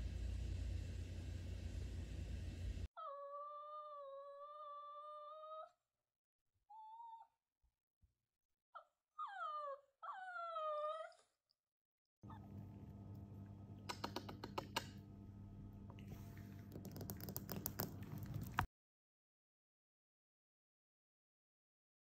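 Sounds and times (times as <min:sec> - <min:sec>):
puppy whining: 0:03.0 - 0:05.8, 0:06.7 - 0:07.4, 0:08.8 - 0:11.4.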